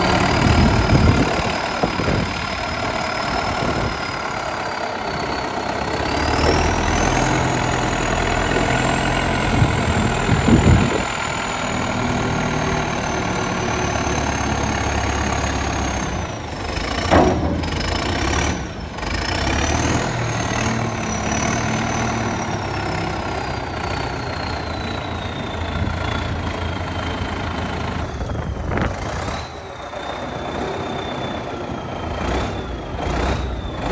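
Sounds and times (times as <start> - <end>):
diesel engine running: 0.0 - 33.9
sharp metal clanks: 17.0 - 18.9.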